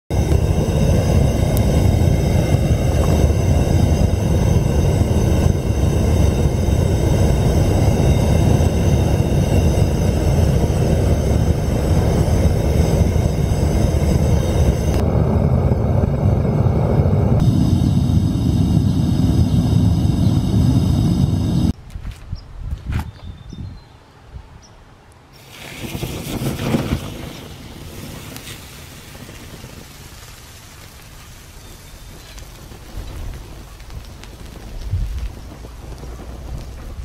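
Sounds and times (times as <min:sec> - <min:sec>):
faint high whine: 0:00.1 - 0:21.8
low rumbling roar: 0:00.1 - 0:21.8.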